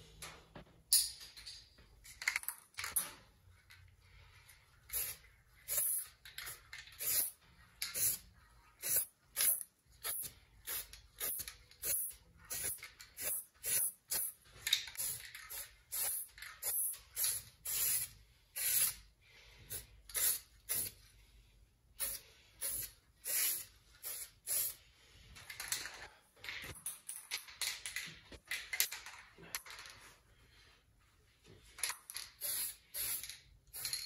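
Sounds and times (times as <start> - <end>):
spray can hissing: 4.9 - 6.1, 8.8 - 14.3, 15.0 - 19.0, 20.2 - 20.9, 22.0 - 24.8, 32.4 - 33.3.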